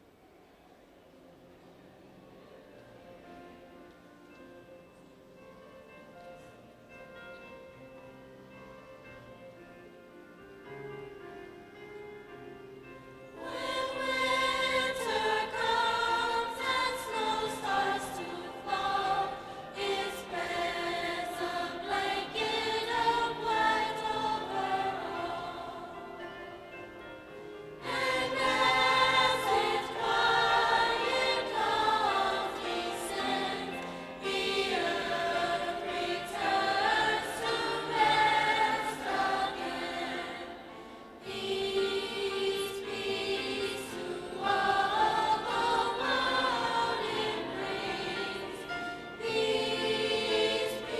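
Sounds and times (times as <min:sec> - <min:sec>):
choir singing: 0:13.3 - 0:50.9.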